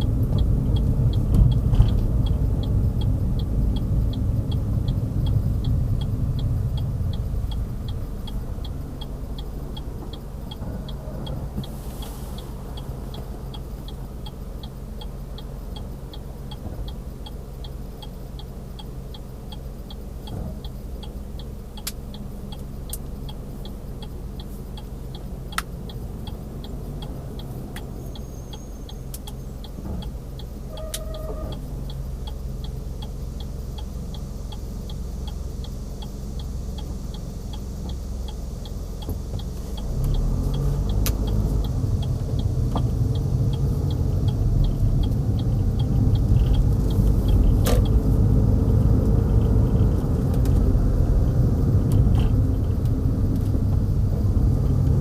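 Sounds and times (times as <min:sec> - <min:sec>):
engine and road rumble: 0:00.0 - 0:55.0
turn signal ticking: 0:00.0 - 0:55.0.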